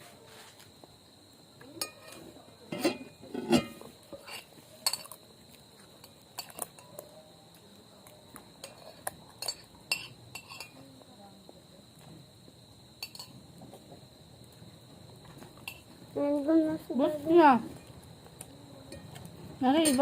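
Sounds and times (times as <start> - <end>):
cutlery clinking on plates: 1.8 - 5.2, 6.0 - 7.0, 8.6 - 10.8, 13.0 - 13.4, 19.8 - 20.0.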